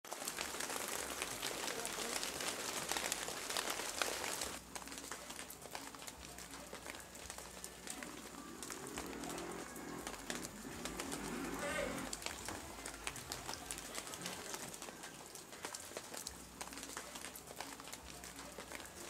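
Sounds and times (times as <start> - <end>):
rain pattering: 0.0 - 19.0.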